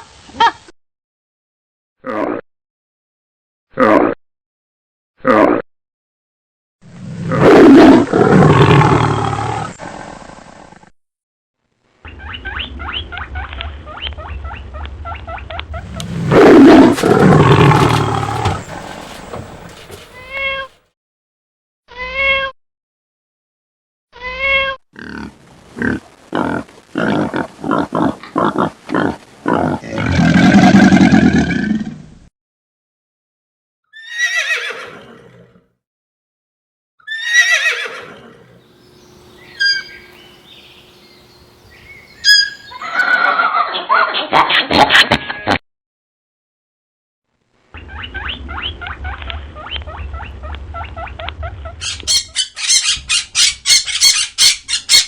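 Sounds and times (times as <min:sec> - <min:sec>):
harsh animal call: 0:14.6 - 0:20.8, 0:37.1 - 0:43.4, 0:47.7 - 0:55.0
high animal squeaks: 0:15.8 - 0:20.7, 0:34.0 - 0:34.8, 0:37.1 - 0:38.0, 0:39.4 - 0:40.5, 0:41.7 - 0:43.4, 0:47.8 - 0:55.0.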